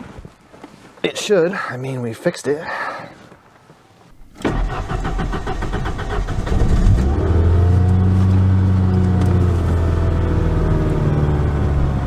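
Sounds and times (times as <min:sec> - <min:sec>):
engine cranking on starter: 0:04.3 - 0:08.4.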